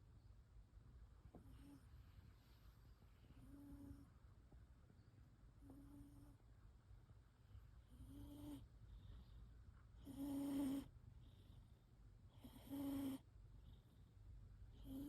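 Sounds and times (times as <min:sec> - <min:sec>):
cat snoring: 0:03.4 - 0:04.0, 0:07.9 - 0:08.7, 0:10.0 - 0:11.4, 0:12.3 - 0:13.3, 0:14.7 - 0:15.0.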